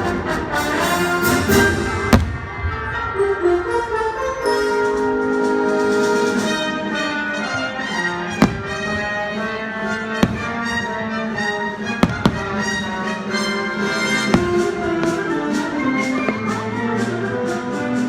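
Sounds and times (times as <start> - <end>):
orchestral music over loudspeakers: 0.0 - 18.0
firework bangs: 1.3 - 3.2, 6.4 - 17.2.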